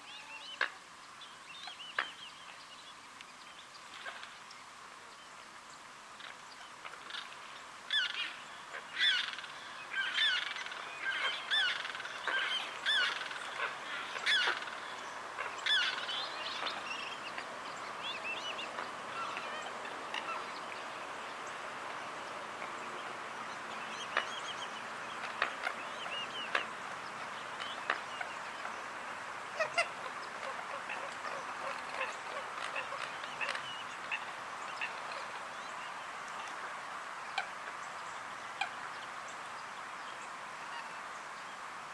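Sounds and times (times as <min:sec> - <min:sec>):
wetland birds honking: 0:07.9 - 0:21.2, 0:29.4 - 0:35.5.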